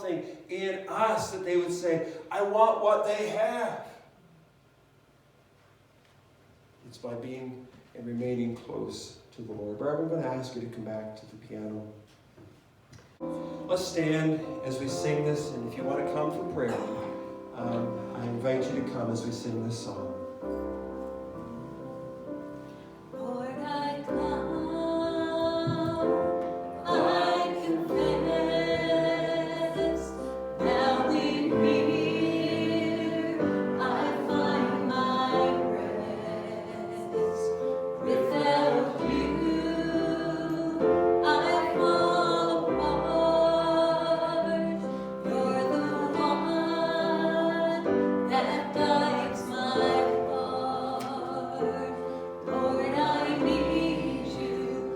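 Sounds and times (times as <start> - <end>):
congregation singing a hymn: 13.2 - 54.9
piano accompaniment: 13.2 - 54.9.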